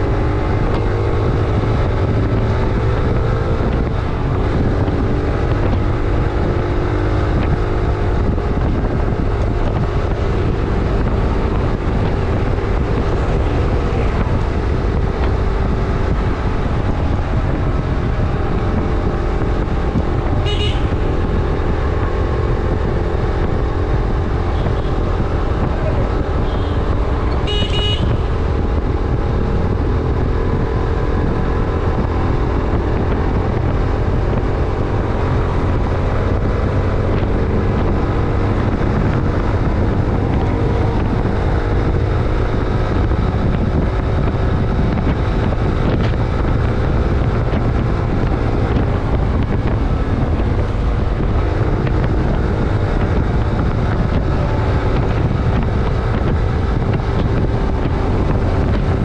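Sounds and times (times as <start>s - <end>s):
motorcycle engine running: 0.0s - 59.0s
wind buffeting microphone: 0.0s - 59.0s
vehicle horn: 20.3s - 21.2s, 26.4s - 28.4s.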